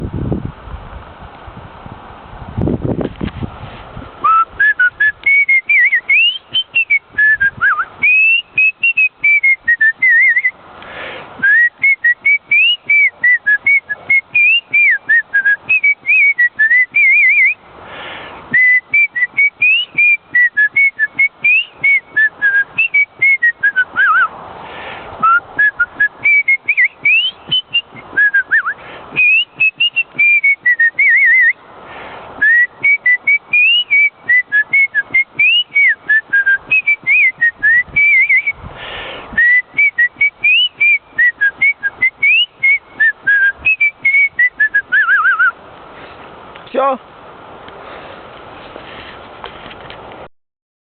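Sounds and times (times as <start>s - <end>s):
person whistling a melody: 4.2s - 10.6s, 11.4s - 17.6s, 18.5s - 24.3s, 25.2s - 31.6s, 32.4s - 38.6s, 39.3s - 45.6s.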